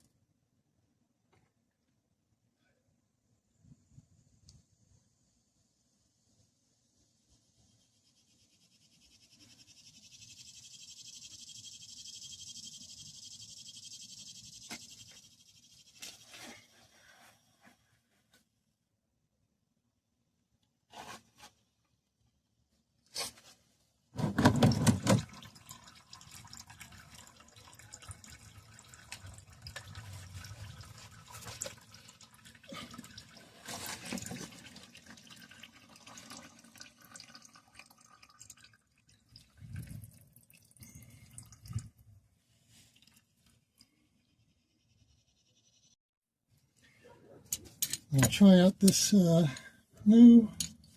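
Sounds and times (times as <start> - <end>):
oil pouring into drain pan: 24.6 - 41.9.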